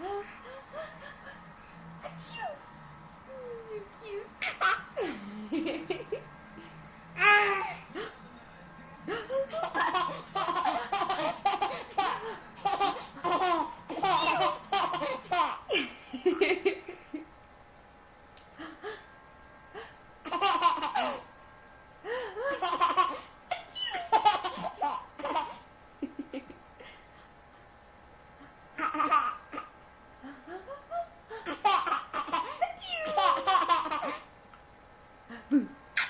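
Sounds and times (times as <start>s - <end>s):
baby laughing: 4.4s - 5.2s, 9.5s - 15.8s, 20.2s - 21.2s, 22.5s - 25.6s, 28.8s - 29.7s, 31.4s - 34.3s.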